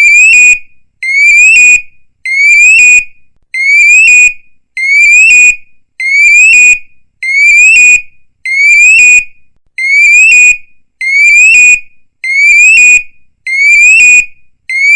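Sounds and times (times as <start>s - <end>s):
electronic police siren bursts: 0.0s - 3.0s, 3.6s - 9.2s, 9.8s - 14.9s.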